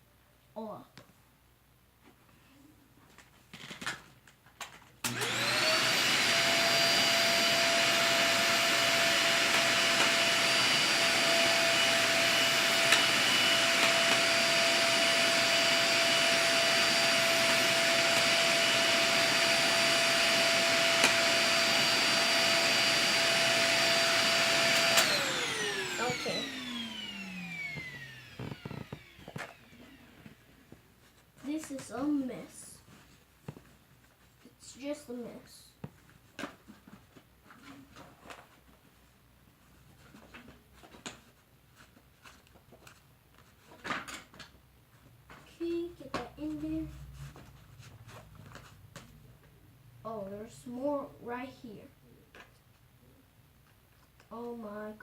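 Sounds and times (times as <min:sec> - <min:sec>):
vacuum cleaner running: 0:05.0 - 0:30.8
vacuum motor winding down: 0:05.1 - 0:30.4.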